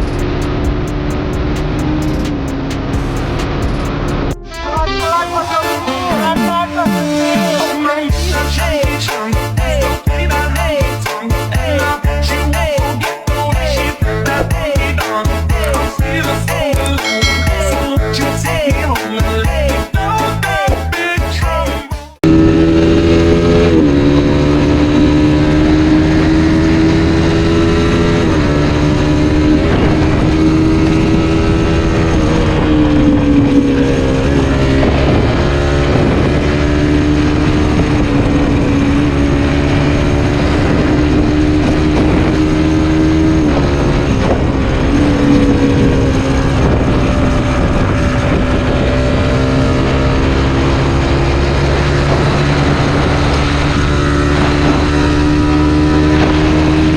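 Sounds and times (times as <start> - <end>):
motorcycle engine running: 0.0 - 4.4.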